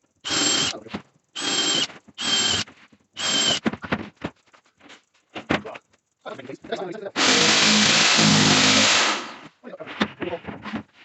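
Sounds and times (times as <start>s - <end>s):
power tool whining: 0.2s - 0.8s, 1.4s - 2.6s, 3.2s - 3.6s, 7.2s - 9.5s.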